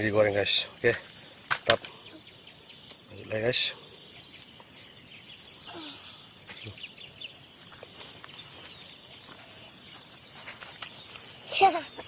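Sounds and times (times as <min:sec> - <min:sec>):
insects chirring: 0:00.0 - 0:12.0.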